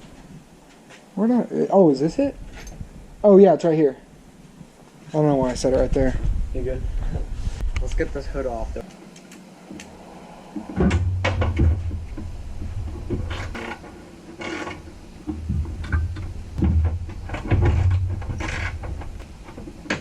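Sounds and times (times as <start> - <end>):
low rumbling handling noise: 4.1 - 20.0.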